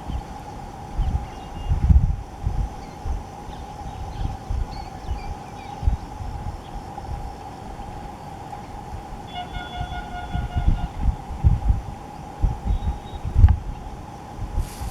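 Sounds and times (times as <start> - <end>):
faint high hum: 0.0 - 14.9
wind buffeting microphone: 0.0 - 14.9
buzzy horn-like tone: 9.3 - 11.7.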